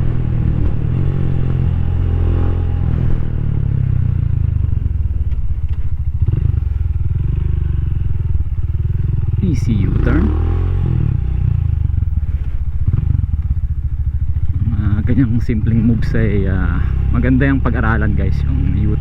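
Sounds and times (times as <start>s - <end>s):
motorcycle engine running: 0.0s - 19.0s.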